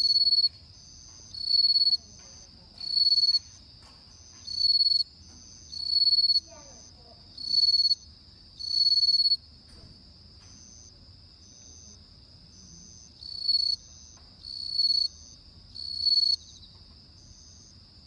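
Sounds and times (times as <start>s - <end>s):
high trill of insects: 0.0s - 9.6s, 10.4s - 18.0s
cricket ringing bursts: 5.7s - 9.4s.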